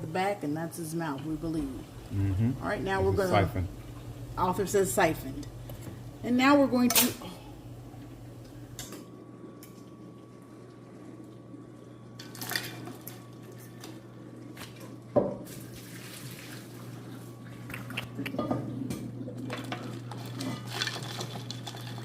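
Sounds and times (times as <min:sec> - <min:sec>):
steady low hum: 0:00.0 - 0:15.2
utensils and pot clattering: 0:06.8 - 0:07.2, 0:18.4 - 0:22.0.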